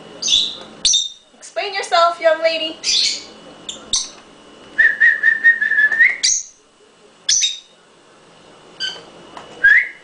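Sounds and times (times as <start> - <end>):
birds giving shrill calls: 0.2 - 1.2, 2.8 - 4.2.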